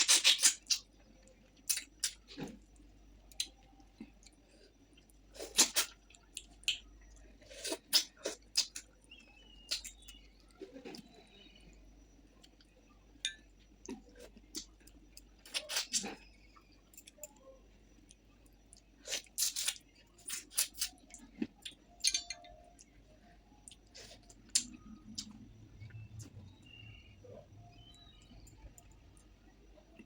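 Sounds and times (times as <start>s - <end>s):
person chewing food: 0.0s - 11.2s, 12.3s - 26.8s.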